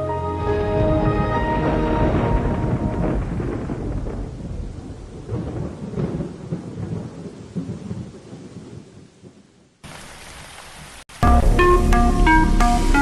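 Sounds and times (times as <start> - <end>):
thunder rumbling: 0.4 - 9.6, 11.2 - 13.0.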